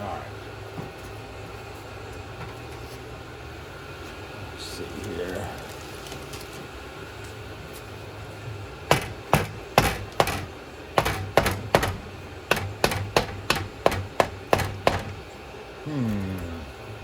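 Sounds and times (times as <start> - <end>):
hammer striking metal housing: 8.9 - 15.3.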